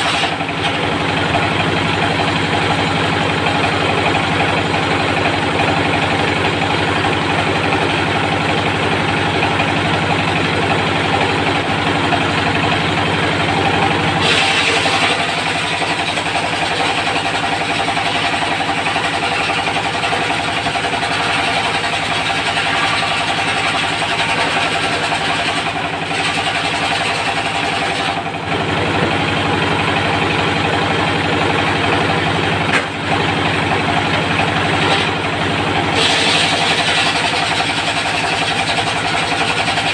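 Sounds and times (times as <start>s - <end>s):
circular blade sawing wood: 0.0s - 0.5s, 14.2s - 28.2s, 35.9s - 39.9s
diesel engine running: 0.0s - 39.9s.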